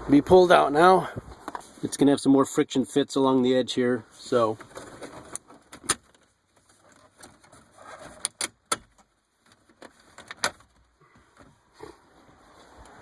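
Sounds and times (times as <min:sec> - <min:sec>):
plastic scraping and creaking: 0:04.5 - 0:13.0.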